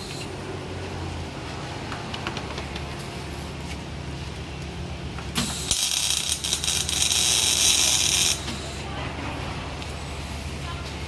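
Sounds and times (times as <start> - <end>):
welding arc hissing: 5.4 - 8.9.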